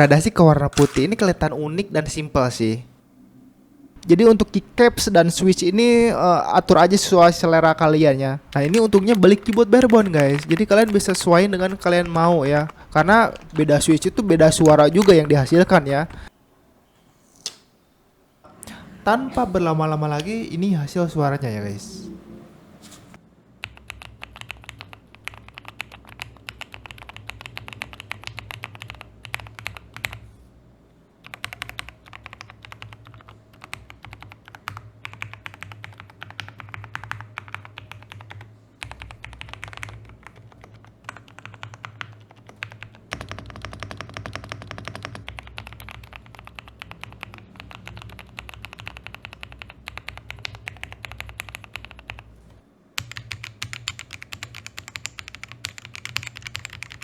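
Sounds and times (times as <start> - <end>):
mechanical keyboard typing: 0.7 - 1.2, 8.4 - 16.3, 23.6 - 30.2, 31.2 - 52.3, 53.0 - 57.0.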